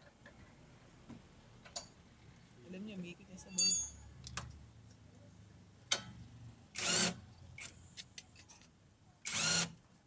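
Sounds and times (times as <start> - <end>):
metal tools clinking: 3.5 - 4.0.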